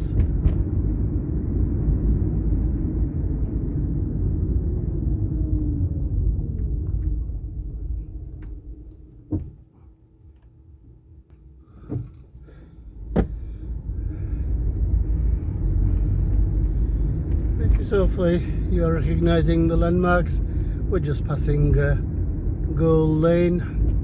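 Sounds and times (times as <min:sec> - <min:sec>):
car engine and road rumble: 0:00.0 - 0:24.0.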